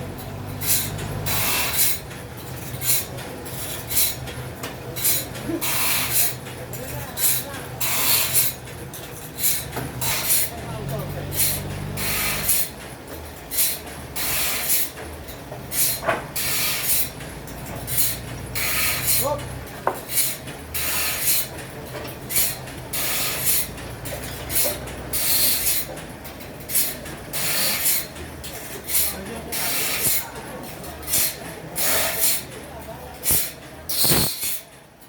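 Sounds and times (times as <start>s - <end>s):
saw rasping through wood: 9.4s - 10.6s, 11.3s - 12.7s, 17.9s - 19.4s, 20.1s - 21.5s, 26.8s - 30.3s, 31.1s - 32.5s.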